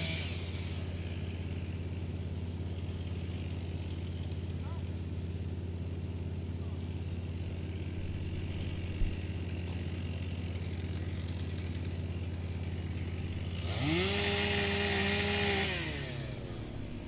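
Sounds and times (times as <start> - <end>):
wood chipper engine running: 0.0 - 17.0
wood being chipped: 7.2 - 17.0.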